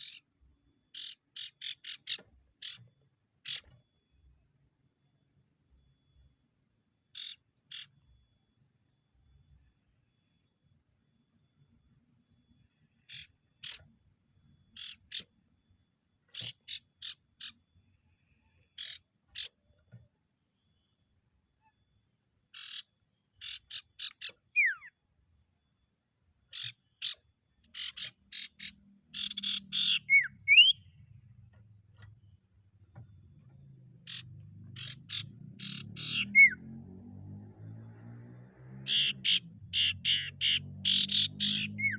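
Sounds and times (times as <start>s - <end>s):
bird rapid chirps: 0.0s - 0.3s, 0.9s - 3.8s, 7.2s - 8.0s, 13.0s - 14.0s, 14.6s - 15.4s, 16.3s - 17.7s, 18.7s - 19.8s, 22.5s - 25.0s, 26.4s - 31.0s, 33.3s - 36.9s, 38.8s - 41.9s.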